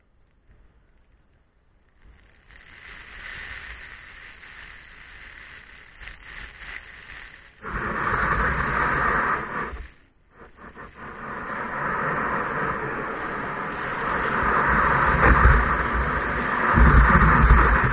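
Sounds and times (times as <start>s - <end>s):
water noise: 2.0s - 17.9s
wind rushing over microphone: 6.2s - 17.9s.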